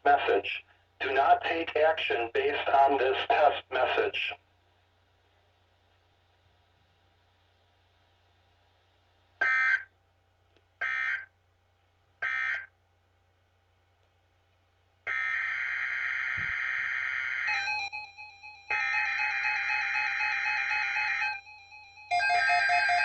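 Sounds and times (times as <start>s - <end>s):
long steady data tone: 15.1s - 23.0s.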